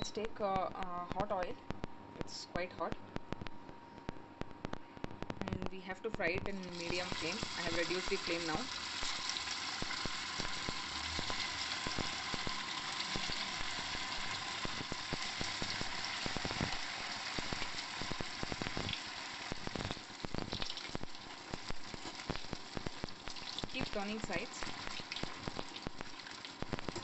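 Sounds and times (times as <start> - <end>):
food frying in hot oil: 6.4 - 27.0.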